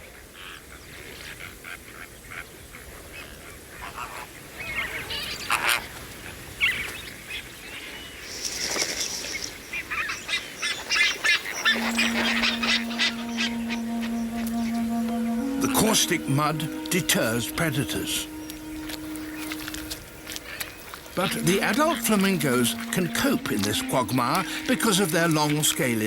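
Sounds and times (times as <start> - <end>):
flamingos calling: 9.9 - 26.0
low held music note: 11.7 - 26.0.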